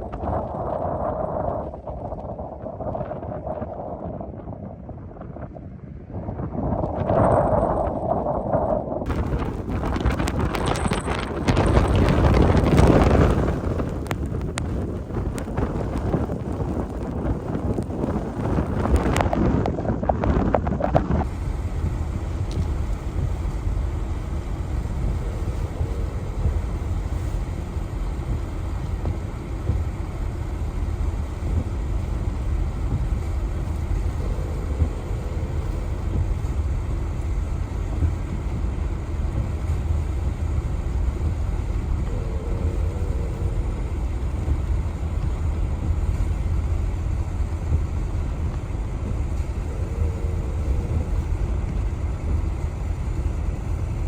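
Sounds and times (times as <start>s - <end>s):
vehicle driving rumble: 0.0s - 54.0s
wind noise: 0.0s - 54.0s.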